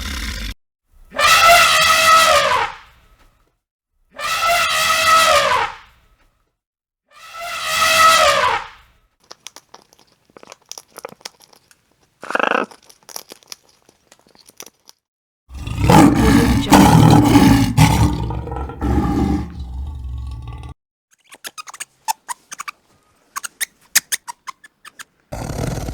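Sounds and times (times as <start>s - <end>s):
deep animal call: 0.0s - 0.5s, 15.5s - 20.7s
loud animal calls: 12.2s - 12.8s, 15.5s - 20.6s.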